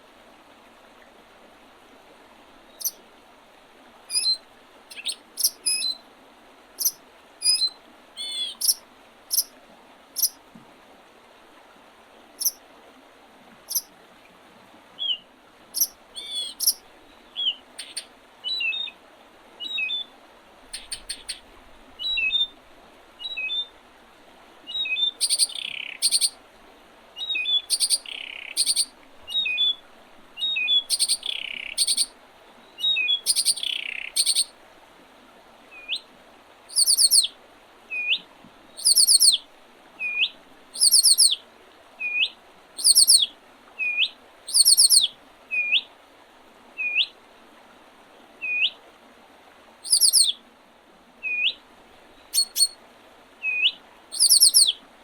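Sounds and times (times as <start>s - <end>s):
songbirds singing: 2.7s - 3.0s, 4.1s - 6.0s, 6.8s - 9.5s, 10.2s - 10.4s, 15.0s - 15.2s, 15.8s - 19.0s, 19.6s - 20.1s, 20.7s - 22.6s, 23.2s - 23.8s, 24.7s - 26.4s, 27.2s - 29.8s, 30.4s - 34.5s, 35.7s - 36.1s, 36.7s - 37.3s, 37.9s - 39.4s, 40.0s - 41.4s, 42.0s - 45.9s, 46.8s - 47.1s, 48.4s - 48.8s, 49.8s - 50.4s, 51.2s - 52.8s, 53.4s - 54.8s
high rapid bird trills: 4.1s - 6.0s, 6.8s - 9.5s, 10.2s - 10.4s, 15.8s - 16.8s, 17.4s - 18.1s, 20.7s - 21.4s, 25.0s - 26.4s, 27.4s - 28.9s, 30.6s - 32.1s, 33.0s - 34.5s, 36.7s - 37.3s, 38.8s - 39.4s, 40.8s - 41.4s, 42.8s - 43.2s, 44.5s - 45.1s, 49.8s - 50.3s, 52.3s - 52.8s, 53.6s - 54.7s.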